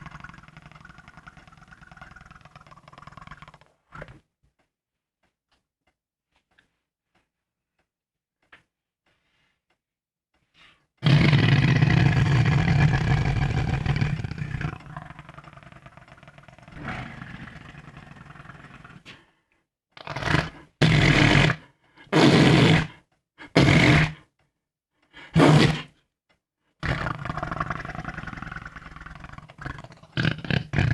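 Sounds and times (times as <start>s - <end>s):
mouth fart sounds: 11.0s - 18.7s, 20.0s - 24.3s, 25.3s - 26.0s, 26.8s - 30.9s.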